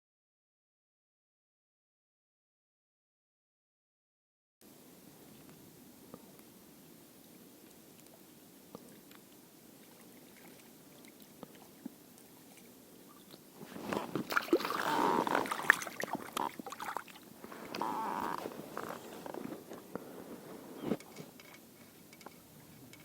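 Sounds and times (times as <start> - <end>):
faint ticks: 7.6 - 13.4, 20.9 - 23.0
water sloshing and splashing: 9.8 - 21.5.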